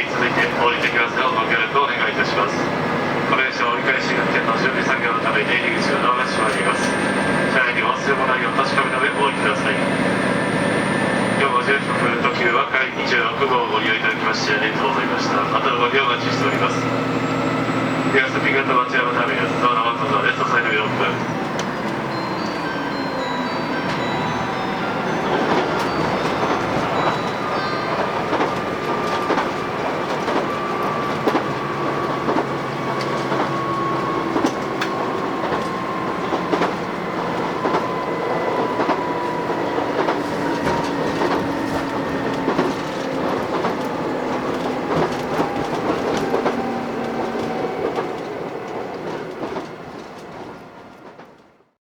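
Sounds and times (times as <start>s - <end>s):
train running: 0.0s - 51.4s
wheels clicking over rail joints: 25.3s - 51.3s.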